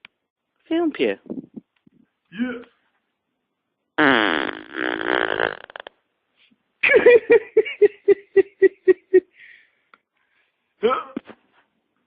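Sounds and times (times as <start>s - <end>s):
fart: 4.0s - 6.0s
person laughing: 6.8s - 9.5s.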